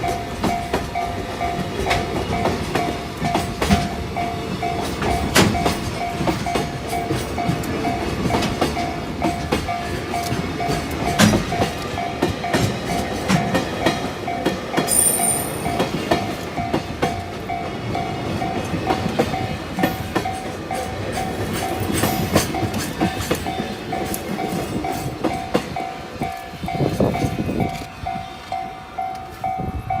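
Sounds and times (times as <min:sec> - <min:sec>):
train wheels clattering over joints: 0:00.0 - 0:27.9
level crossing alarm ding: 0:14.9 - 0:15.9.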